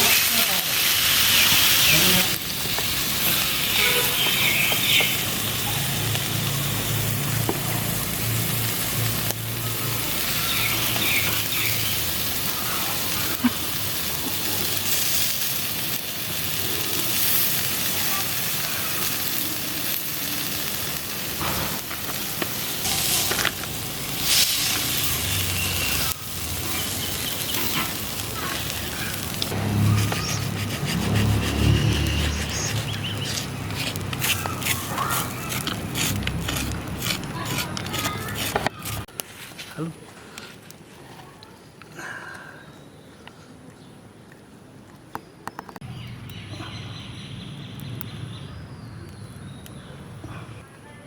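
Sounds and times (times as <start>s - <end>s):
fish sizzling on a hot stone: 0.0s - 37.4s.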